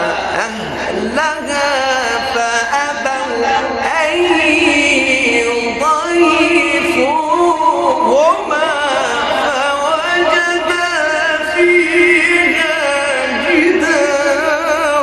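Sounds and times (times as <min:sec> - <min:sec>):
man chanting recitation: 0:00.0 - 0:15.0.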